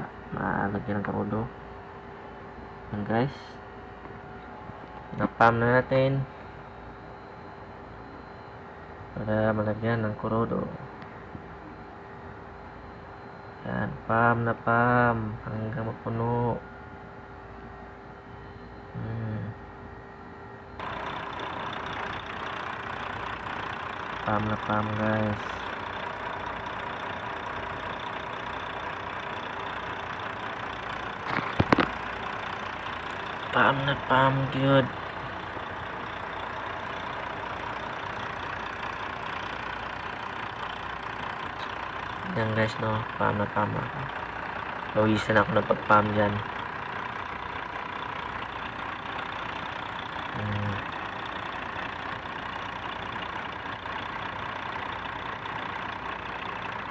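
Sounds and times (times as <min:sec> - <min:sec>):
diesel truck engine idling: 0:00.0 - 0:19.9, 0:20.7 - 0:56.9
fuel pump humming: 0:20.7 - 0:56.9.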